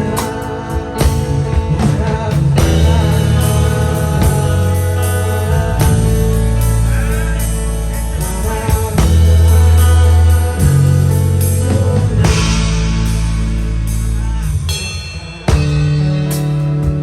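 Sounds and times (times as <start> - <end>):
deep bass notes: 0.0 - 17.0
guitar: 0.0 - 17.0
person singing: 0.0 - 17.0.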